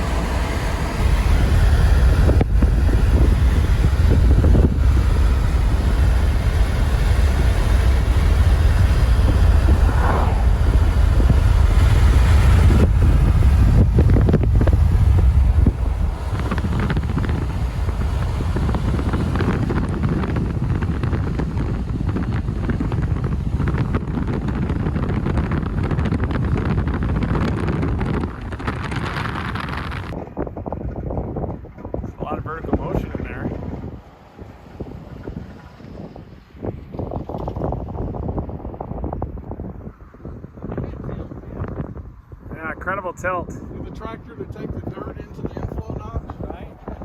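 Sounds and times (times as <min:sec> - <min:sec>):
heavy low rumble: 0:00.0 - 0:36.9, 0:40.7 - 0:47.0
moving vehicle noise: 0:00.0 - 0:47.0
wind buffeting microphone: 0:00.0 - 0:47.0.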